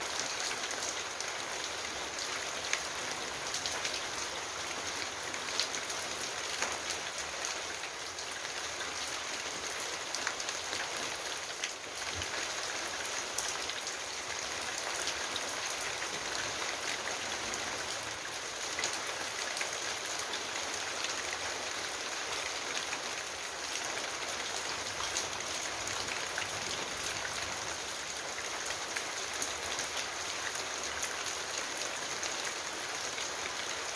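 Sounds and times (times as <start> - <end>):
rain falling on leaves: 0.0 - 33.9.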